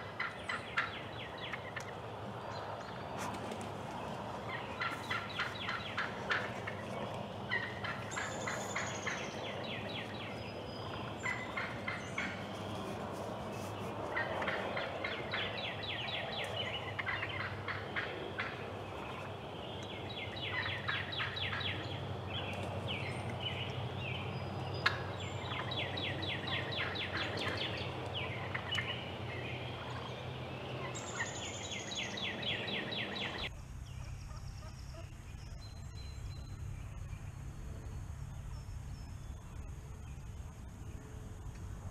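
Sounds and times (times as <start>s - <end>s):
turkeys gobbling: 0.0s - 2.0s, 4.3s - 24.0s, 24.8s - 35.1s
steady low hum: 0.0s - 41.9s.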